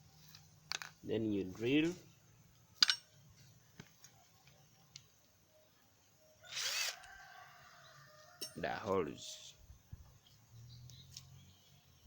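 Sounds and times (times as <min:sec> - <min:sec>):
tools clicking and tapping: 0:02.8 - 0:03.1.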